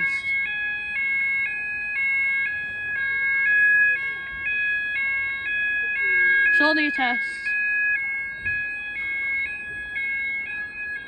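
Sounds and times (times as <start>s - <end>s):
steady alarm tone: 0.0s - 11.0s
two-tone fire alarm: 0.0s - 11.0s.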